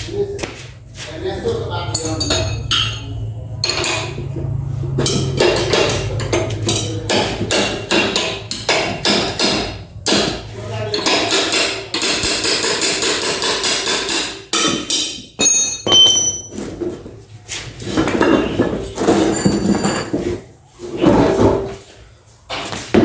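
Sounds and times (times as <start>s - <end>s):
metal hammering and clanking: 1.9s - 16.7s.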